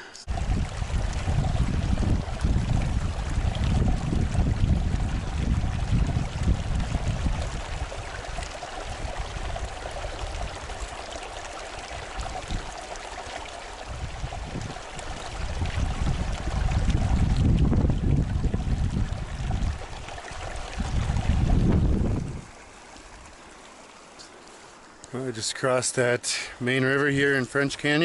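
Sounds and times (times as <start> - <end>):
wind rumble on microphone: 0.3 - 11.0, 11.9 - 12.8, 13.8 - 22.6.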